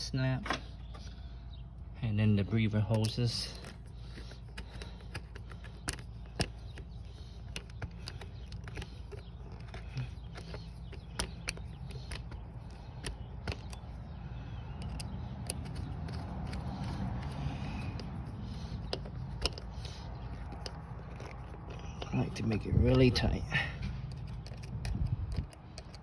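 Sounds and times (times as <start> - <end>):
steady low hum: 0.0 - 26.0
hose clamps clicking and tapping: 2.9 - 14.0, 14.8 - 22.2, 24.1 - 26.0.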